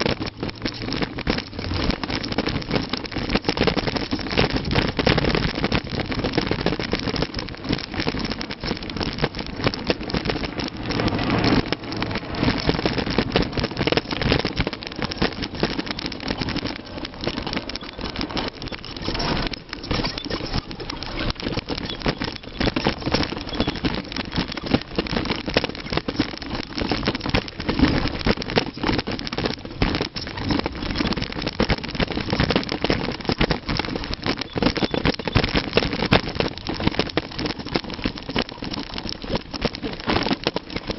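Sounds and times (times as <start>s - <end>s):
bike rattling over bumps: 0.0s - 40.9s
bike tyres rumbling on dirt: 0.0s - 40.9s.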